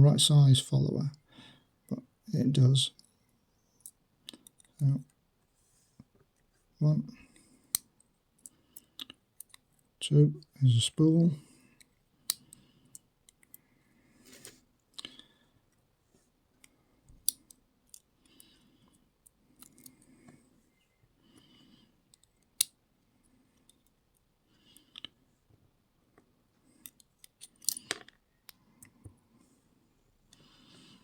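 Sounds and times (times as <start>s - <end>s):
metallic clicks of lock parts: 7.7s - 9.8s, 26.8s - 28.2s
soft rustles: 14.2s - 14.6s.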